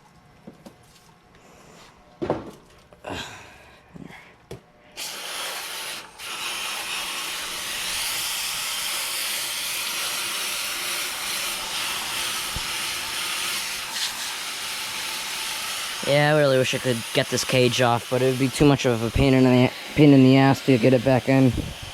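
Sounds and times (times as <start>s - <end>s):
garden hose spraying water: 5.0s - 21.9s.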